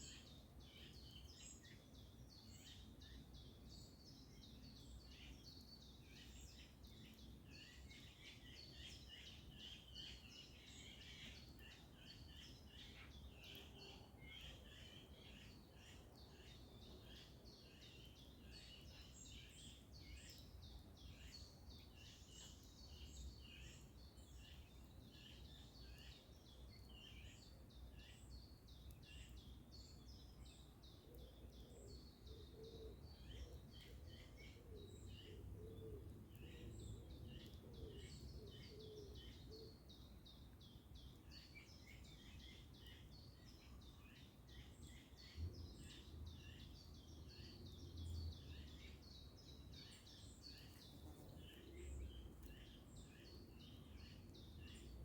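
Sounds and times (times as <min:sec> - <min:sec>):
small birds chirping and singing: 0:00.0 - 0:55.0
lower repeated bird calls: 0:30.9 - 0:55.0.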